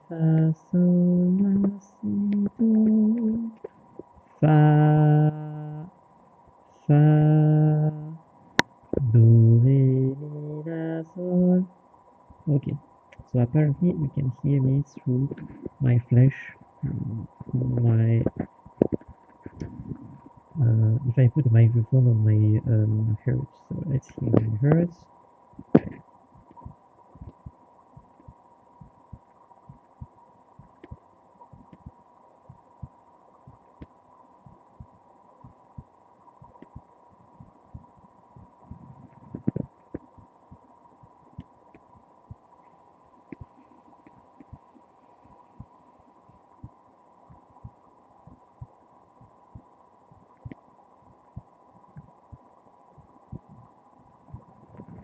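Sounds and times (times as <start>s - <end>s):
steady hum: 0.0s - 55.0s
heartbeat thumps: 16.8s - 20.8s, 25.6s - 42.4s, 45.6s - 53.7s, 54.3s - 55.0s.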